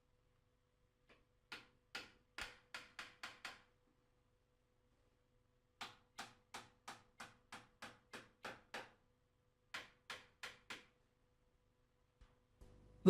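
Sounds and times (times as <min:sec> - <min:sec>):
hammer tapping pins into wood: 0:01.1 - 0:03.8, 0:05.8 - 0:09.0, 0:09.7 - 0:11.0.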